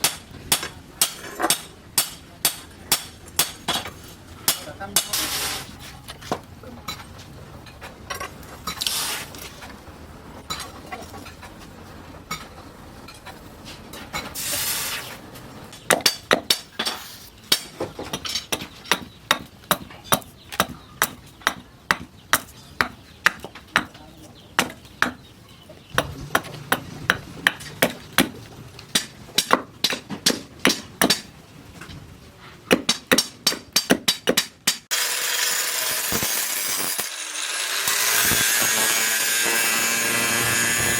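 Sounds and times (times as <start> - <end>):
hammer striking steel on anvil: 0.0 - 3.9.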